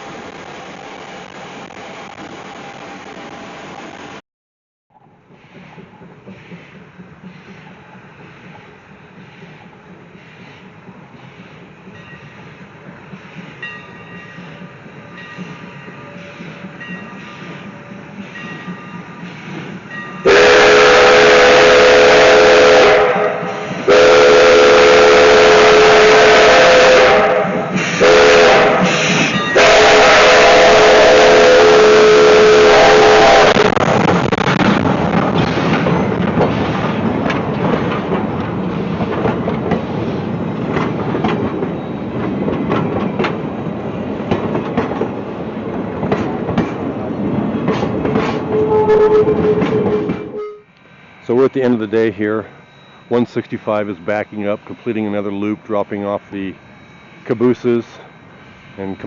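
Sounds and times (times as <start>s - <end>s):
train wheels clicking: 4.9s - 21.5s, 27.1s - 31.0s, 33.7s - 56.6s
steam locomotive whistle blasts: 20.1s - 33.7s, 48.5s - 50.7s.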